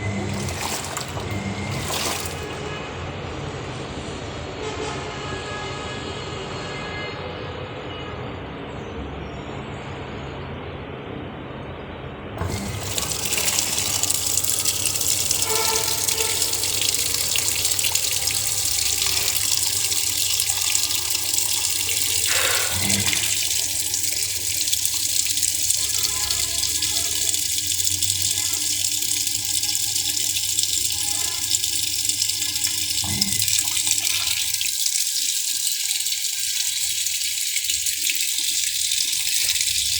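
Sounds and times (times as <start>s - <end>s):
washing machine motor hum: 0.0s - 2.8s, 12.4s - 39.9s
water rushing into tub: 0.0s - 2.8s, 12.4s - 39.9s.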